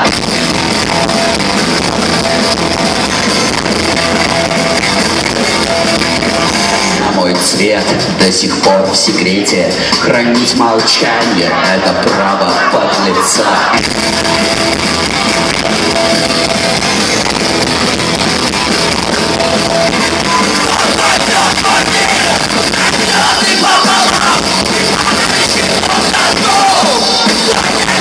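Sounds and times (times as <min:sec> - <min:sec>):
rock band playing live: 0:00.0 - 0:28.0.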